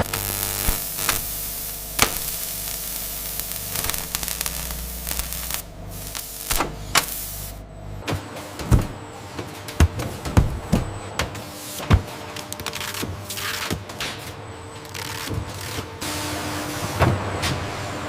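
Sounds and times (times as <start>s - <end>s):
factory machinery humming: 0.0s - 18.0s
hiss: 0.2s - 7.6s.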